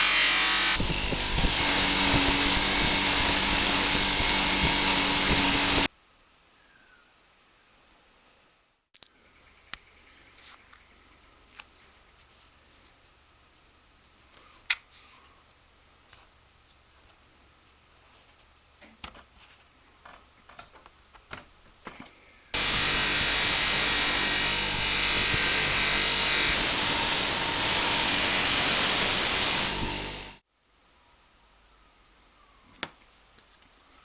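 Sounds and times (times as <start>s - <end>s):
power tool running: 0.0s - 5.9s, 22.6s - 30.4s.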